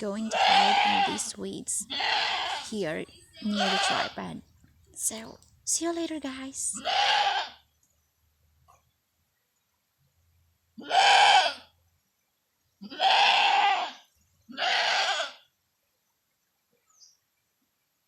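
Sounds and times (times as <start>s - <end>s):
goat bleating: 0.0s - 4.4s, 5.0s - 7.6s, 10.8s - 11.6s, 12.8s - 15.4s.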